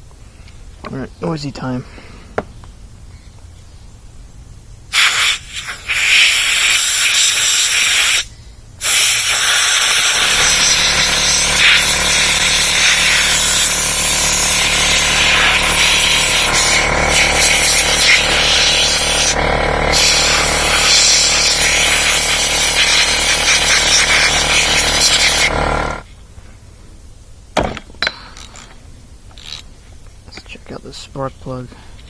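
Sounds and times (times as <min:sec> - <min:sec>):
compressed air blow gun hissing: 0:04.9 - 0:26.0
low hum: 0:10.1 - 0:26.3.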